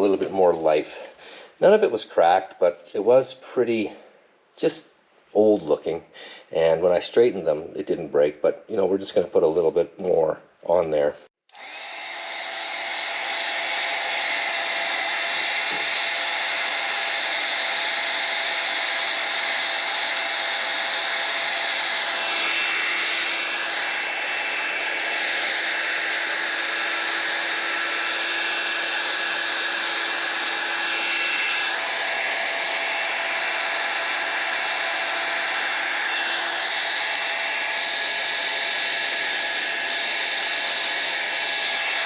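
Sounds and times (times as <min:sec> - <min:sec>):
electric power tool running: 0:11.5 - 0:42.0.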